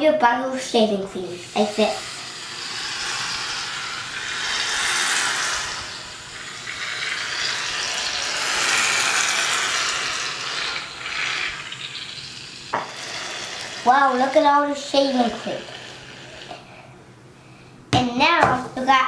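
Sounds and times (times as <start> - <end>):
aerosol can spraying hiss: 1.3 - 13.9.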